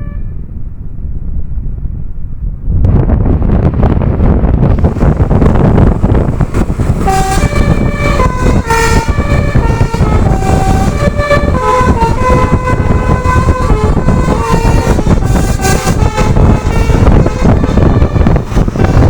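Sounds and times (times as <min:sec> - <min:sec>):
air horns playing a tune: 0:00.0 - 0:00.4, 0:05.0 - 0:19.0
steady low rumble: 0:00.0 - 0:19.0.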